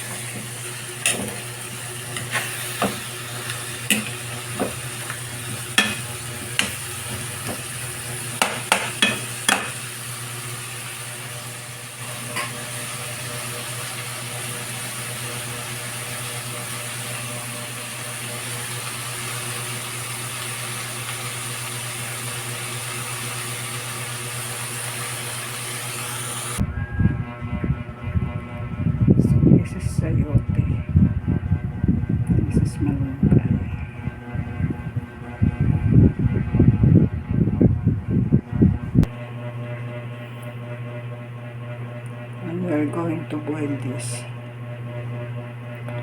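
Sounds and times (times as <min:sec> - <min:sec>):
food sizzling in a pot: 0:00.0 - 0:26.6
low hum: 0:26.6 - 0:40.9.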